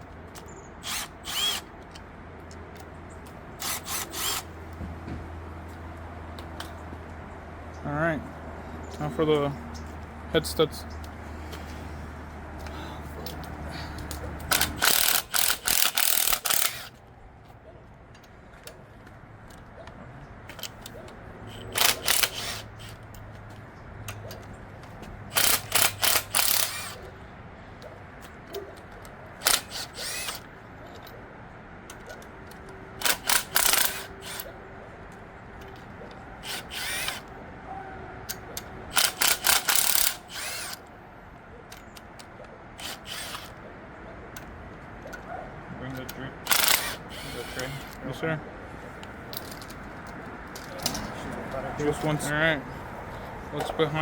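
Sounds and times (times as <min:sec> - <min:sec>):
ratchet wrench clicking: 0:00.8 - 0:02.0, 0:03.6 - 0:04.5, 0:12.6 - 0:17.0, 0:20.5 - 0:23.2, 0:25.3 - 0:27.1, 0:29.4 - 0:31.0, 0:31.9 - 0:34.5, 0:36.4 - 0:37.3, 0:38.3 - 0:40.9, 0:41.7 - 0:43.6, 0:46.1 - 0:48.0.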